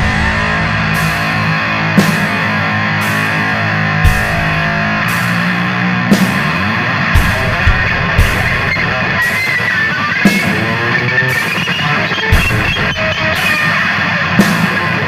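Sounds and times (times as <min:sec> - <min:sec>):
heavy drum hits: 0:00.0 - 0:05.5, 0:06.1 - 0:09.3, 0:12.3 - 0:13.3
drum kit: 0:00.0 - 0:15.0
electric guitar: 0:00.0 - 0:15.0.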